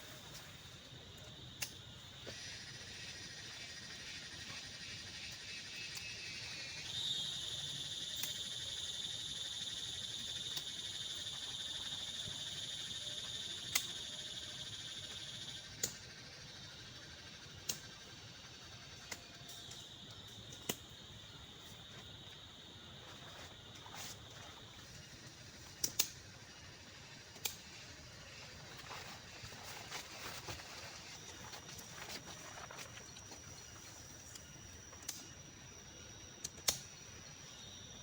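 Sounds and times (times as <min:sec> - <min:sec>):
insect trilling: 0:00.0 - 0:38.0
sharp clicks: 0:25.8 - 0:26.2, 0:27.4 - 0:27.6, 0:36.4 - 0:36.9.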